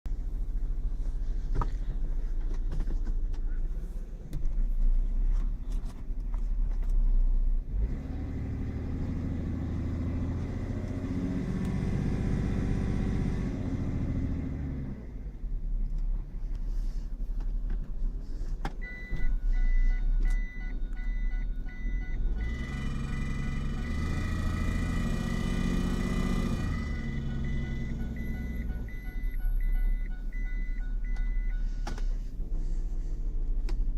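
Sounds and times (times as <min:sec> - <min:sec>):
engine revving: 0:07.7 - 0:15.2, 0:22.3 - 0:29.1
high electronic beeping: 0:26.4 - 0:31.7.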